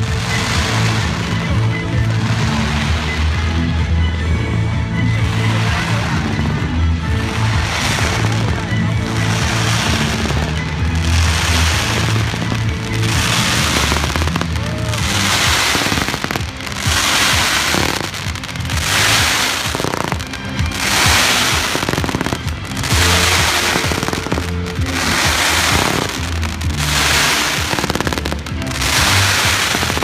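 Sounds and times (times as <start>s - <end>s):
fireworks crackling and bursting: 0.0s - 30.0s
music playing: 0.0s - 30.0s.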